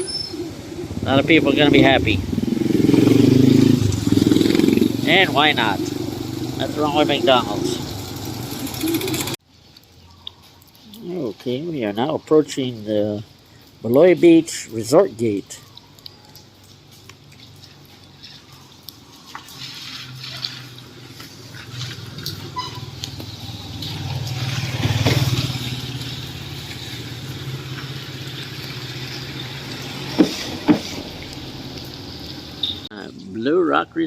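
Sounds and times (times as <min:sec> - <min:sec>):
vehicle engine humming: 0:00.0 - 0:09.4.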